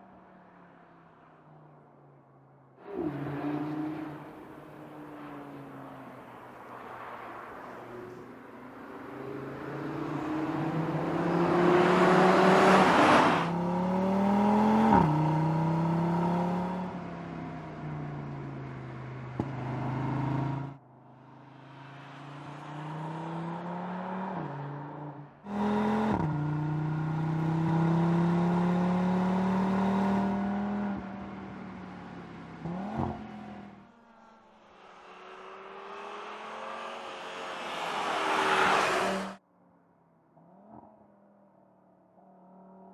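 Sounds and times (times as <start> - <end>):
rush of passing car: 2.8 - 15.1, 34.2 - 39.4
car engine accelerating hard: 8.9 - 16.9, 34.8 - 39.4.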